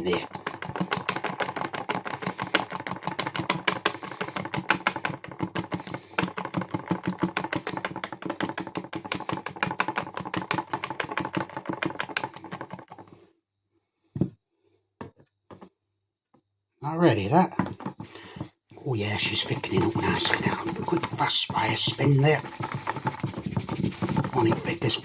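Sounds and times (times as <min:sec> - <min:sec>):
whisk clicking against jug: 0:00.0 - 0:13.0, 0:18.8 - 0:25.0.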